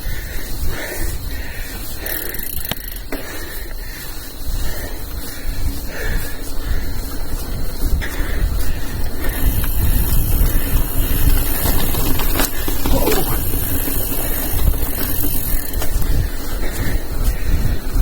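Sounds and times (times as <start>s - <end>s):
bike tyre rumble on dirt: 0.0s - 18.0s
wind buffeting microphone: 0.0s - 18.0s.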